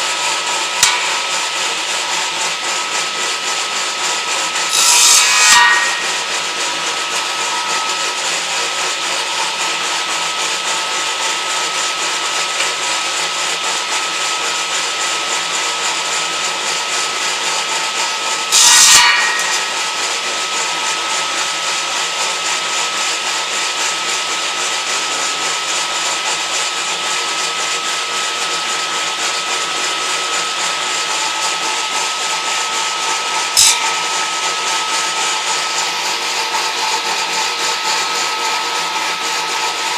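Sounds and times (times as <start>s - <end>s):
loud saw burst: 0.0s - 12.0s, 18.4s - 20.2s, 28.7s - 39.9s
electric saw whining: 0.0s - 39.9s.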